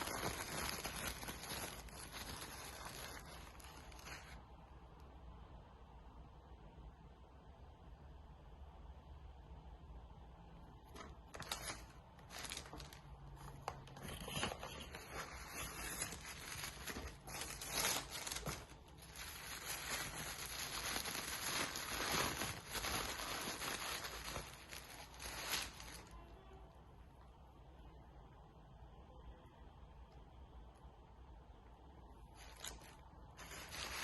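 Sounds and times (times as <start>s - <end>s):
packaging rustling and tearing: 0.0s - 4.4s, 10.9s - 26.1s, 32.4s - 34.0s.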